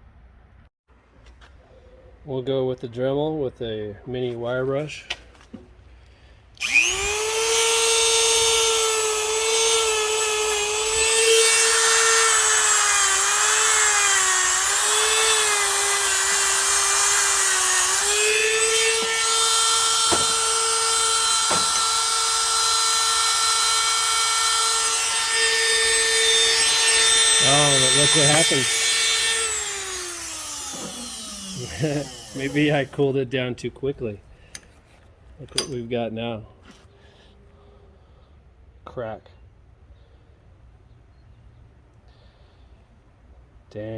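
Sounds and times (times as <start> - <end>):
rotary tool high whine: 6.6 - 33.2.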